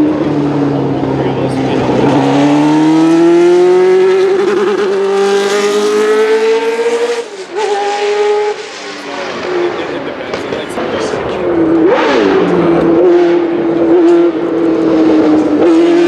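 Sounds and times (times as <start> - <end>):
racing car engine accelerating: 0.0 - 16.0.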